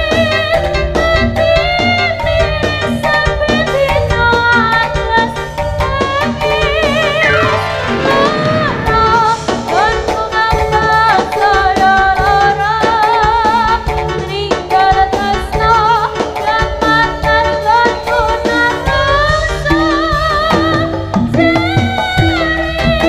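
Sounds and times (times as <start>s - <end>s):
drums and percussion: 0.0s - 23.0s
high wavering melody: 7.0s - 9.9s.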